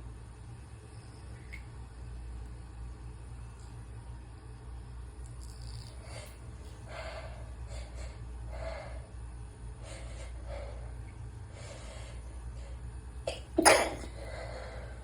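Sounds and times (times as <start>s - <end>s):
person sneezing: 13.3s - 14.2s.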